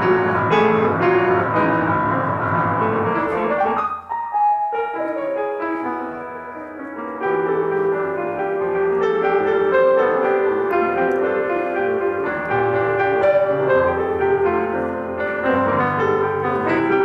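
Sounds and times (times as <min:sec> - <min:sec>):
improvised piano playing: 0:00.0 - 0:17.0.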